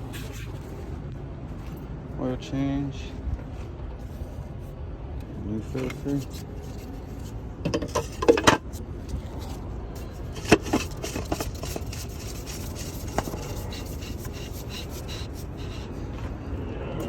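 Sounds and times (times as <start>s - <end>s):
tools and parts clicking: 7.7s - 8.6s.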